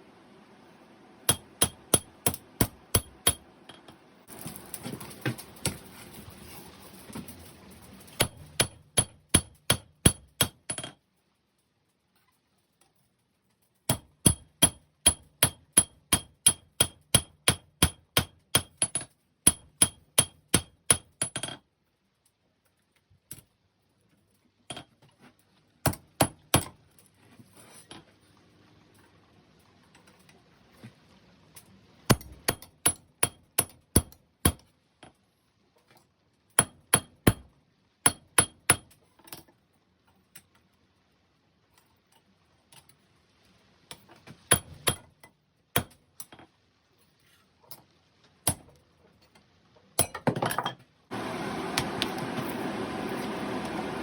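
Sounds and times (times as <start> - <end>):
hammer striking steel on anvil: 1.3 - 3.8, 8.2 - 10.8, 13.9 - 21.4, 38.1 - 38.9.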